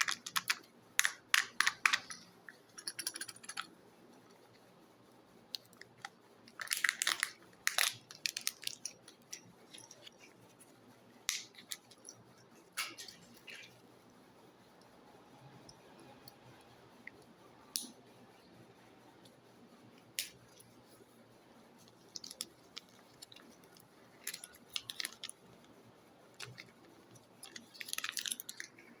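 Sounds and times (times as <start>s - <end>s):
plastic packaging crinkling: 0.0s - 3.7s, 5.6s - 10.4s, 21.9s - 25.7s, 26.4s - 29.0s.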